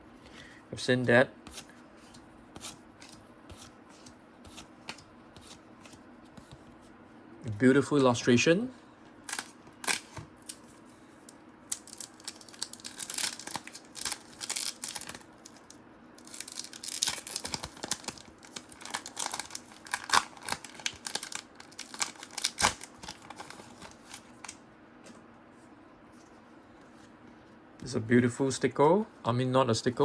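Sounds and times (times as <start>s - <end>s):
paper wrapper tearing and crinkling: 11.7s - 15.6s, 16.2s - 24.5s.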